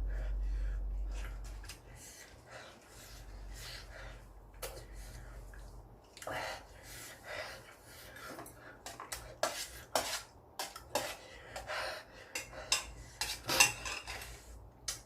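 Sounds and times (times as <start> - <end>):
utensils clinking on dishes: 12.3 - 15.0.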